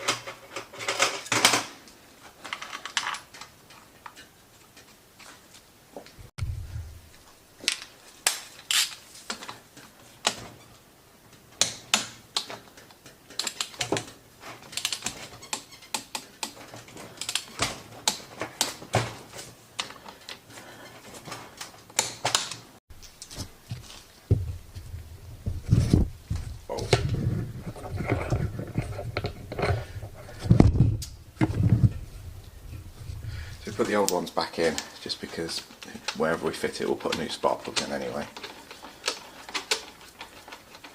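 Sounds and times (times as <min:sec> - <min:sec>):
clinks of tools and metal parts: 0:00.0 - 0:04.9
dull low knocks: 0:06.4 - 0:07.1, 0:23.7 - 0:28.8.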